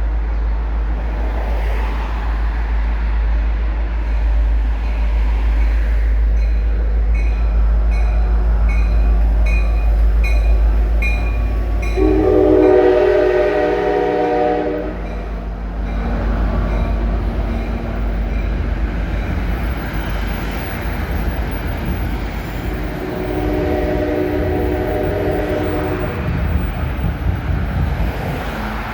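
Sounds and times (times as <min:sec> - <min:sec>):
diesel train engine rumbling: 0:00.0 - 0:28.9
train air horn blast: 0:10.8 - 0:15.4, 0:22.9 - 0:26.5.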